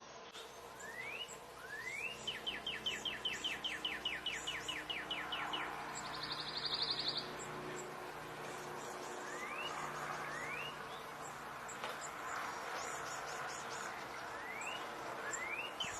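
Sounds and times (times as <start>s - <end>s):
cardinal whistling song: 0.8s - 7.2s, 9.2s - 10.8s, 14.4s - 15.9s.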